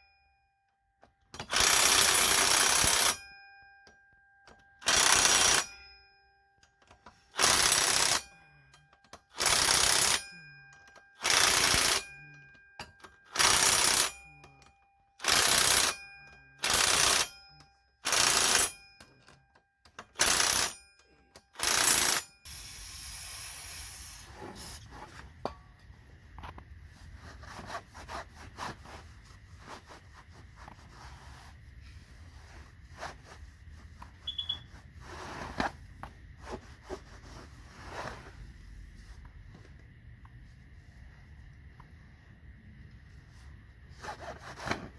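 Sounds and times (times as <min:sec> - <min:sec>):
pressurised spray hissing: 0:22.5 - 0:24.9.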